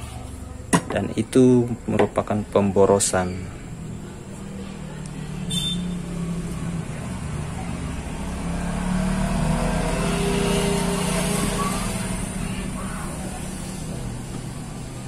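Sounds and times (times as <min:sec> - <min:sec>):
vehicle engine running: 0:03.6 - 0:15.0.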